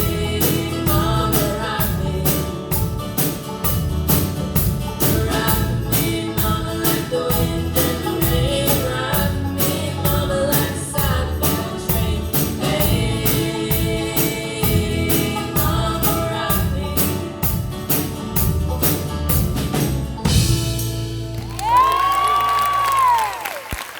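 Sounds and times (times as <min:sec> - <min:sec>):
person singing: 0:00.0 - 0:02.9, 0:05.0 - 0:17.6
live band playing country-folk song: 0:00.0 - 0:23.1
high whoop: 0:21.4 - 0:23.9.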